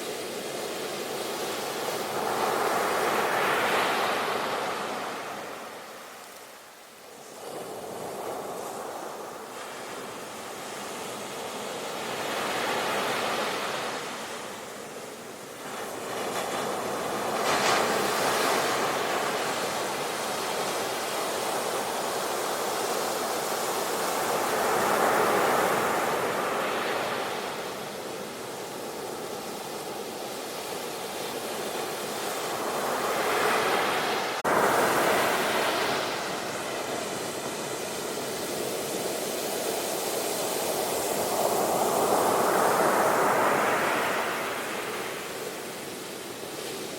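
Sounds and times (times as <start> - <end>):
ocean waves breaking: 30.7 - 46.9.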